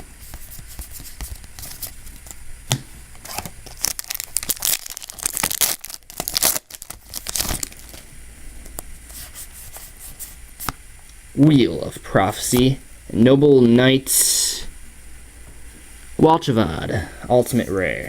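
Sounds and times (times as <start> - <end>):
foil wrapper tearing and crinkling: 3.2 - 8.0.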